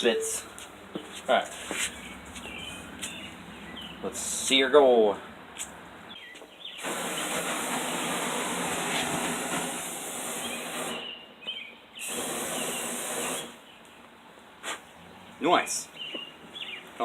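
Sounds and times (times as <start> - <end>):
flamethrower hissing blasts: 6.8 - 11.2, 12.0 - 13.7.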